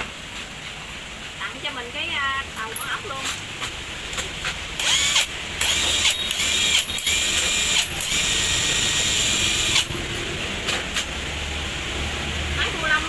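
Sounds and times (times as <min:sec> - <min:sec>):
impact wrench motor whine: 0:04.8 - 0:09.9.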